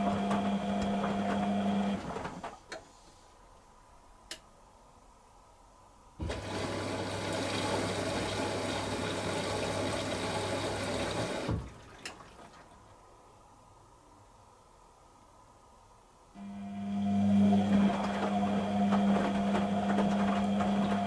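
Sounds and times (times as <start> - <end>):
washing machine water rushing: 6.2 - 12.9, 16.8 - 21.0.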